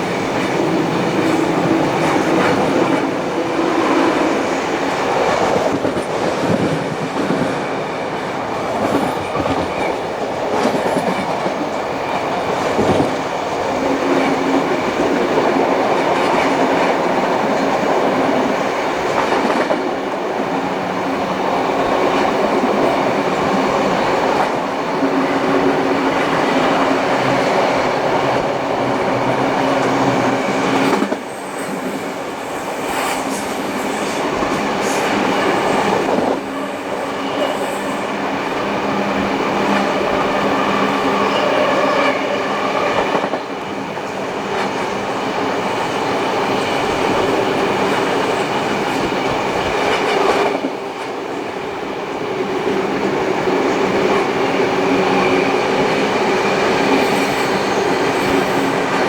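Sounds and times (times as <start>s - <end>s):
train rolling on track: 0.0s - 59.0s.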